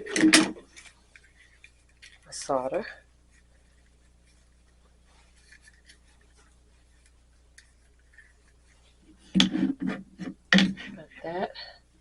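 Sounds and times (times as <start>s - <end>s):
objects clattering on a table: 0.0s - 0.7s.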